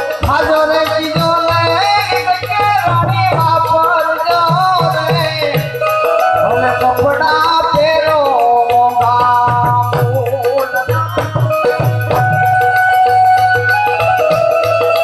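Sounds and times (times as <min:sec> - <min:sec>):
hand drum beat: 0:00.0 - 0:15.0
sharp percussion strikes: 0:00.0 - 0:15.0
held melodic notes: 0:05.0 - 0:15.0.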